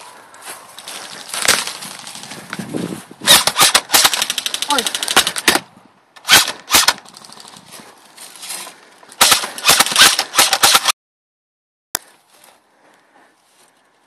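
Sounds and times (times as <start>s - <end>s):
airsoft guns firing: 3.3s - 5.6s, 9.2s - 10.9s.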